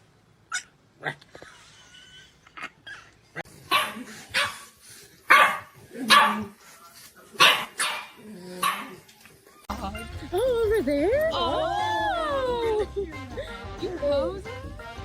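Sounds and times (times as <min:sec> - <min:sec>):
dog barking: 0:03.7 - 0:04.7, 0:05.3 - 0:06.5, 0:07.4 - 0:09.0.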